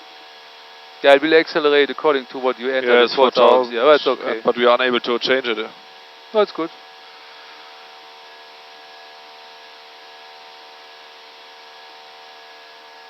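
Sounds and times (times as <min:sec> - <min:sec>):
steady humming tones: 0:01.0 - 0:11.2.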